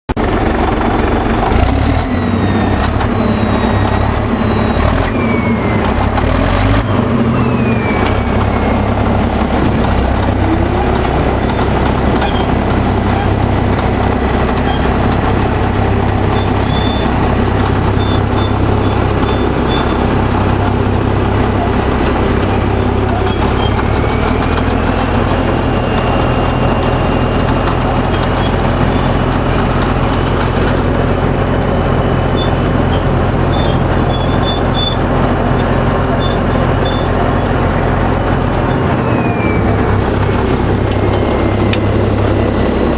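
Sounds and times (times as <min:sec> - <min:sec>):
bulldozer diesel engine running: 0:00.1 - 0:42.9
short falling whines: 0:01.6 - 0:42.9.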